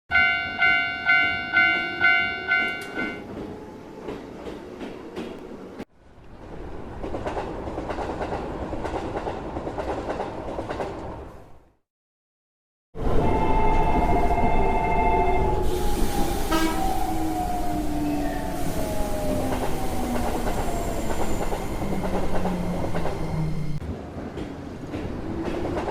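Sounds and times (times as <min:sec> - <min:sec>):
bell ringing: 0:00.1 - 0:03.2
train rumbling: 0:00.2 - 0:11.7, 0:13.0 - 0:25.9
train wheels clacking: 0:24.2 - 0:25.9.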